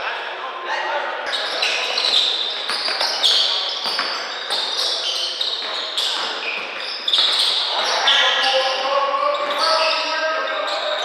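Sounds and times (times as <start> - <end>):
sneakers squeaking on hardwood: 1.2 - 11.0.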